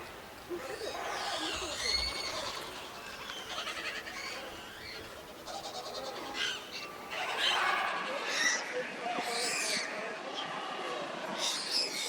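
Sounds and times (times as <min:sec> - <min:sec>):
monkeys squealing: 0:00.7 - 0:07.7.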